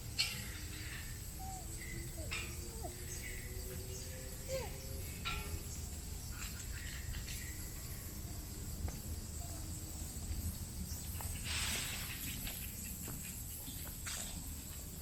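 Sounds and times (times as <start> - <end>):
high insect drone: 0.0 - 15.0
short rustling hiss: 11.3 - 12.4.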